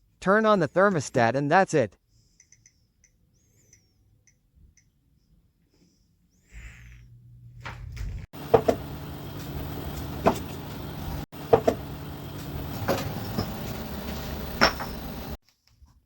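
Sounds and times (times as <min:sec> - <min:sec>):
air conditioner humming: 0:07.1 - 0:15.4
sharp knocks and clicks: 0:08.5 - 0:08.9, 0:11.5 - 0:11.9.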